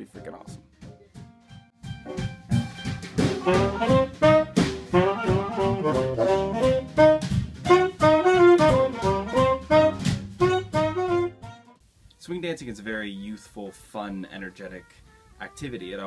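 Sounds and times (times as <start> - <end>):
drum kit steady beat: 0.0 - 11.6
saxophone and brass horns: 3.2 - 11.8.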